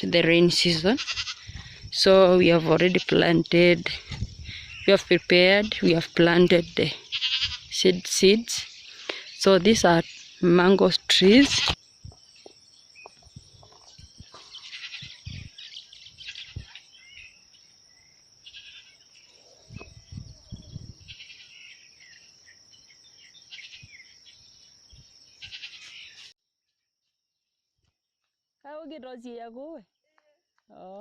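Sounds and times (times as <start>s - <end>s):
insects buzzing: 0.0s - 26.3s
chirping calls: 2.8s - 26.3s.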